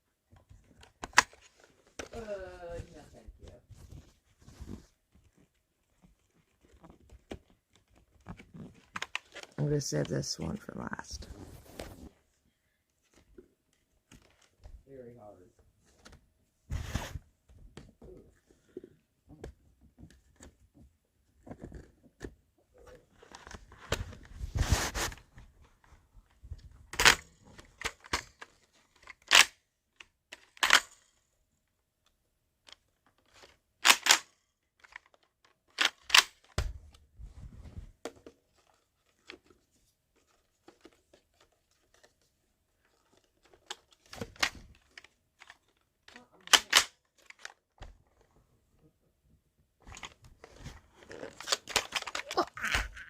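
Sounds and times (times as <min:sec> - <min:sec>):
tearing sounds: 0:51.0 - 0:53.0.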